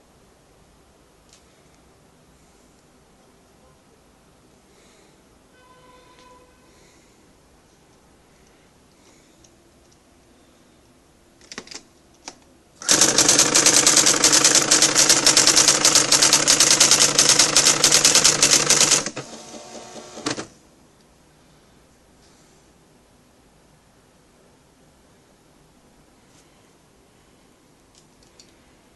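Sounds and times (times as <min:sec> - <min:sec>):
electronic typewriter strikes: 0:12.8 - 0:20.5
mechanical whirr: 0:12.8 - 0:20.5.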